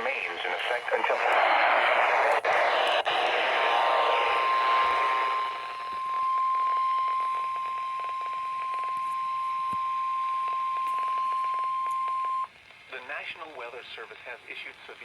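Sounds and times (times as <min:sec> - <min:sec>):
radio static hiss and crackle: 0:00.0 - 0:15.0
high warning alarm tone: 0:03.0 - 0:12.5.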